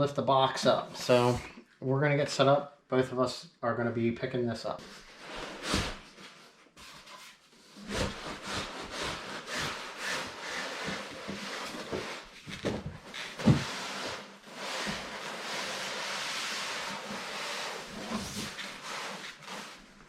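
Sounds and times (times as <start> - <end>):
cardboard scraping on cardboard: 4.8 - 20.0.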